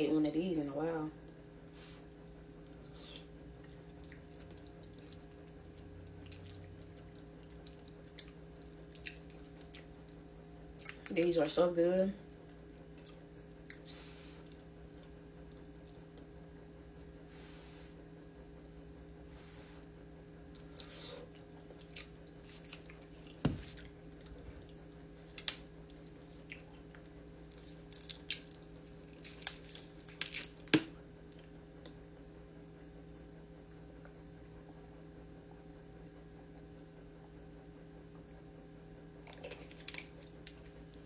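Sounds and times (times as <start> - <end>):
low electrical hum: 0.0 - 41.0
person chewing food: 2.6 - 11.1, 12.9 - 16.4, 19.8 - 24.8, 25.4 - 30.7.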